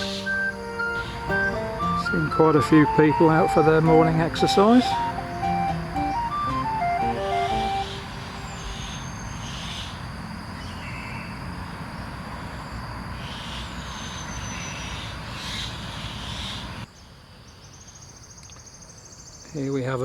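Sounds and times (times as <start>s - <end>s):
descending bird whistles: 0.0s - 10.0s
insect pulsing high trill: 0.0s - 14.6s.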